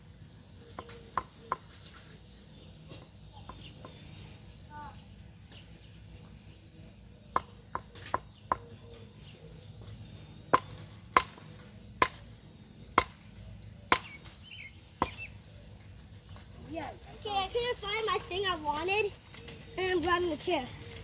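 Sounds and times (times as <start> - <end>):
insects chirring: 0.0 - 21.0.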